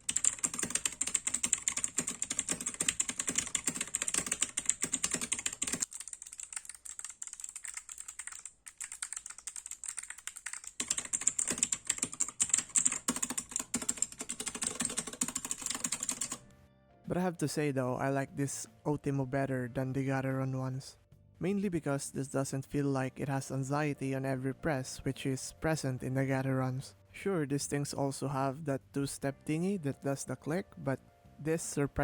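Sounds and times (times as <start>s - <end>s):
fast typing on clicky keyboard: 0.0s - 16.4s.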